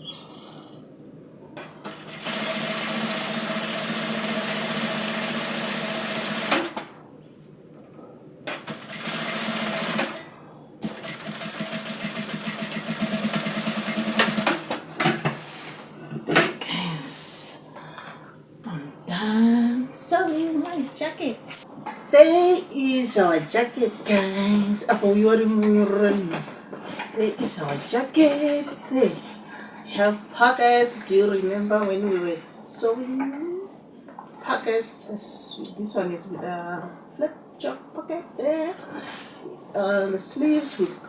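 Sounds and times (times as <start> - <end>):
sewing machine stitching: 1.8 - 6.9, 8.6 - 15.3.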